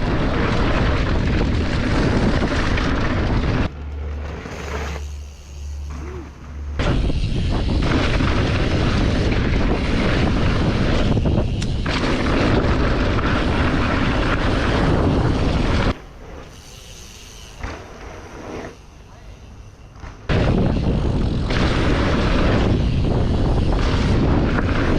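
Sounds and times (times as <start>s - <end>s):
wind buffeting microphone: 0.0s - 3.8s, 6.7s - 16.0s, 20.3s - 24.9s.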